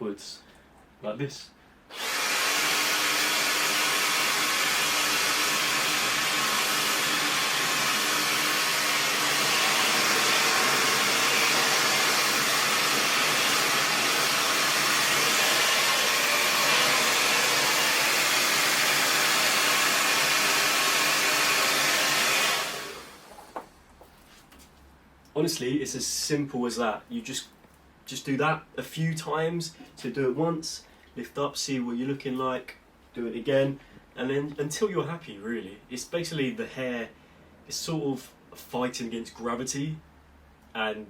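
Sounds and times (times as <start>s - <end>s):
hair dryer blowing: 1.9s - 23.6s.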